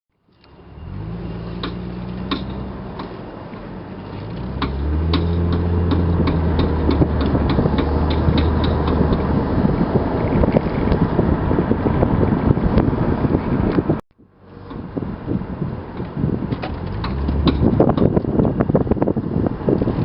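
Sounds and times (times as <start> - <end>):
car engine accelerating: 0.4 - 20.0
rhythmic clicking from car wheel: 4.6 - 9.4.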